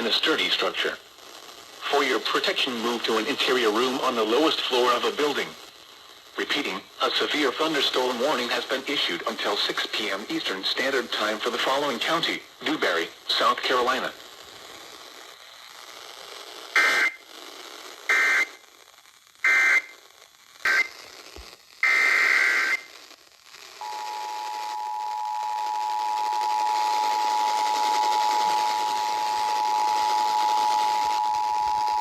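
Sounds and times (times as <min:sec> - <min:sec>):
radio hiss: 0:00.0 - 0:32.0
harsh digital data bursts: 0:07.0 - 0:18.7, 0:19.4 - 0:32.0
two-tone attention signal: 0:23.8 - 0:32.0.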